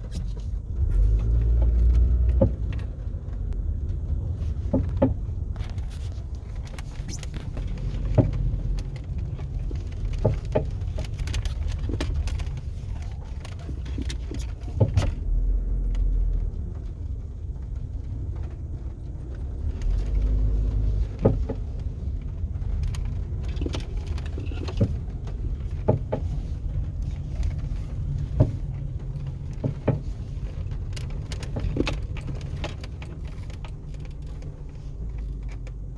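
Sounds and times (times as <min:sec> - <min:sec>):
car low rumble: 0:00.0 - 0:35.9.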